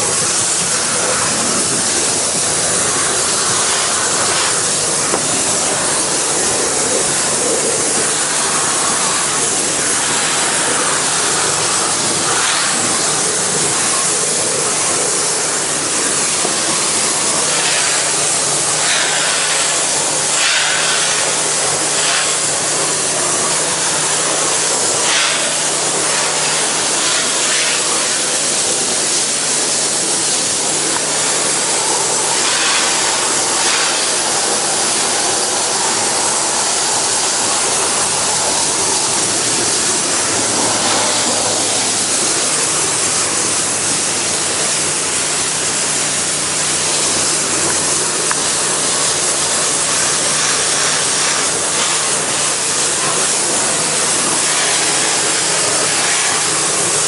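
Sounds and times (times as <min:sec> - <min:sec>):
pressure washer spray hissing: 0:00.0 - 0:57.0.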